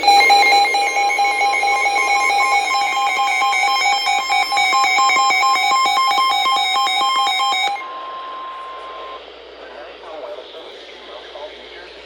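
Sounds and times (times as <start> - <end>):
two-pitch electronic alert tone: 0.0 - 7.8.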